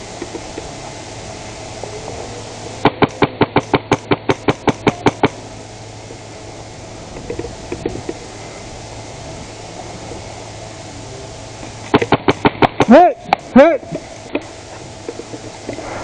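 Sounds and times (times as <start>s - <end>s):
airsoft gun firing: 2.8s - 5.4s, 11.8s - 13.4s.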